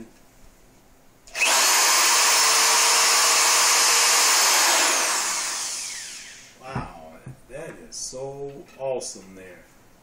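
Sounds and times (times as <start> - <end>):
power drill spinning with falling whine: 1.3 - 6.6.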